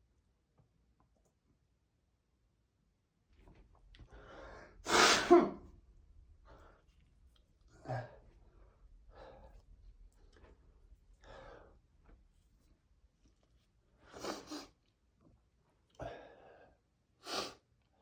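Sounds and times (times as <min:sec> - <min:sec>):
person blowing nose: 0:04.8 - 0:05.6, 0:14.1 - 0:14.7, 0:17.2 - 0:17.6.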